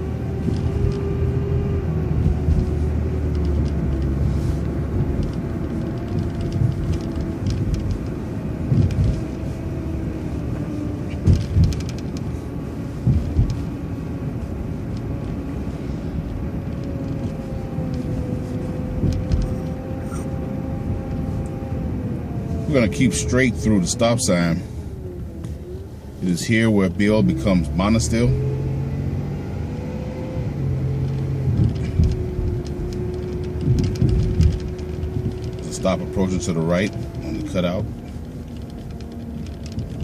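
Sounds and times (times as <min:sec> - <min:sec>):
bus engine rumbling: 0:00.0 - 0:40.0
short thumps: 0:13.0 - 0:13.8.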